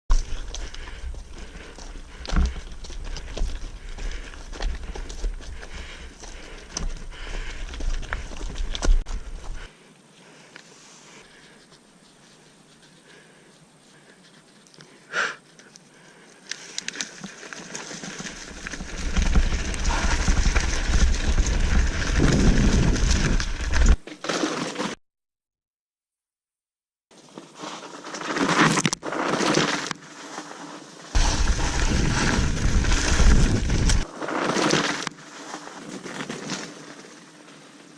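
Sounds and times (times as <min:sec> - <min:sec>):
bike rattles and clicks: 0:00.1 - 0:09.7, 0:16.4 - 0:25.0, 0:27.2 - 0:30.5, 0:31.2 - 0:37.9
bike tyre noise on dirt: 0:00.1 - 0:14.6, 0:16.0 - 0:25.0, 0:27.2 - 0:37.9
wind rumble on microphone: 0:18.9 - 0:24.0, 0:31.2 - 0:34.1.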